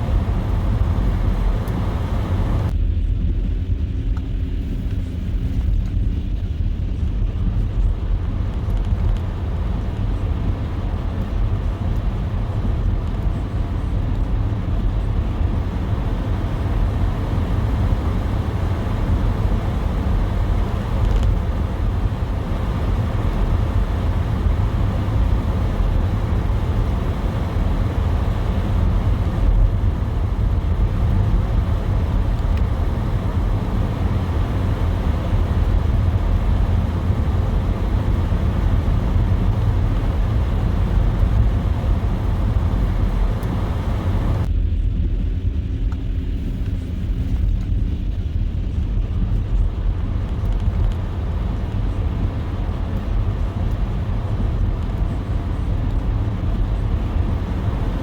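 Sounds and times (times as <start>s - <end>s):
soft road hiss: 0.0s - 2.7s, 15.7s - 44.5s
car engine and tyre rumble: 0.0s - 58.0s.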